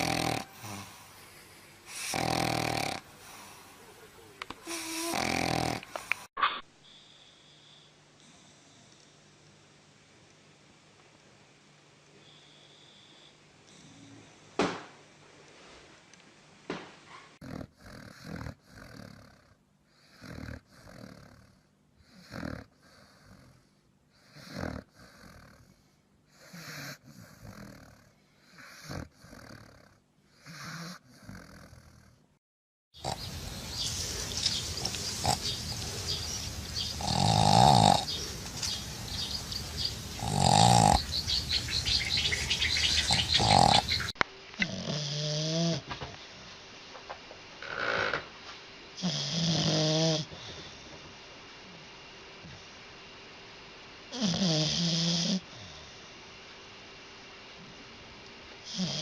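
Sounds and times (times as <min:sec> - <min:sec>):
dogs snoring: 0:00.0 - 0:03.9, 0:04.5 - 0:06.3, 0:12.2 - 0:14.5, 0:17.2 - 0:32.2, 0:33.0 - 0:45.9, 0:47.6 - 0:48.3, 0:49.0 - 0:51.0, 0:54.1 - 0:56.0, 0:58.6 - 0:59.0
steady hiss: 0:33.0 - 0:44.6.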